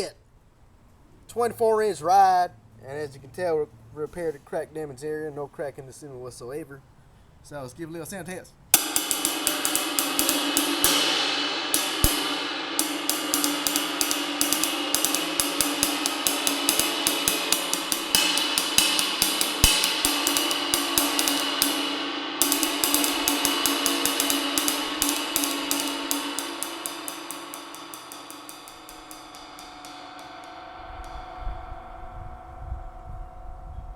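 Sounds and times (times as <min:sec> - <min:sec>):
ride cymbal struck with stick: 0:08.7 - 0:33.9.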